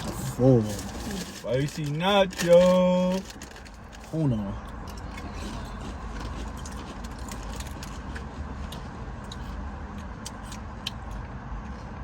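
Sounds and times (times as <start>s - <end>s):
potato chips crunching: 4.7s - 9.4s.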